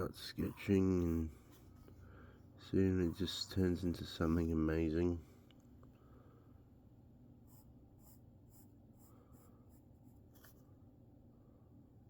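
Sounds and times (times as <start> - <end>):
pencil scratching on paper: 0.2 - 1.6, 7.5 - 10.6.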